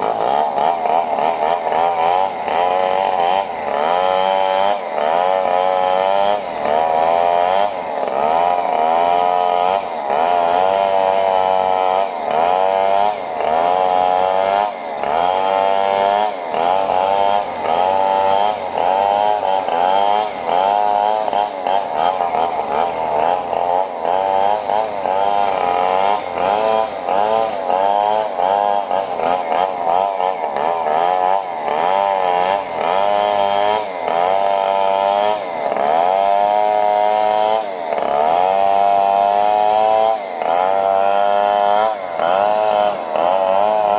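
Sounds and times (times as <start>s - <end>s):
small engines revving: 0.0s - 43.9s.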